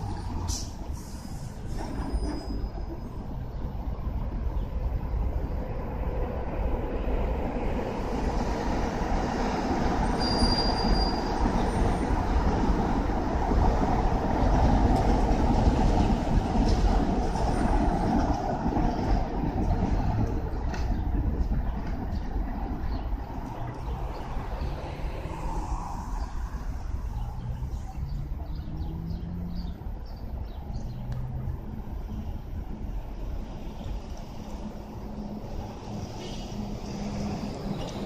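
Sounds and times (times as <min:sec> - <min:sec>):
train wheels rumbling on track: 0:00.0 - 0:38.0
high wheel squeal: 0:00.5 - 0:03.3, 0:10.0 - 0:12.1.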